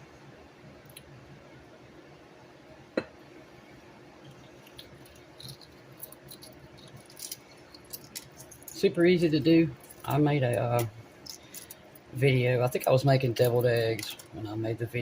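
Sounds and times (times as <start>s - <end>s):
small items ticking and tapping: 4.3s - 9.0s, 9.7s - 14.5s.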